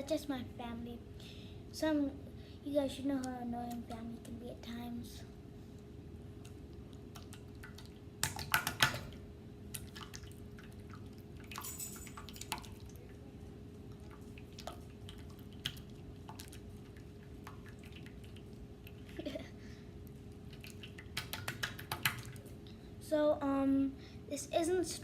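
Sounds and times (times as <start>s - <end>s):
slime squelching: 6.4s - 11.6s, 12.2s - 19.2s, 20.2s - 22.6s.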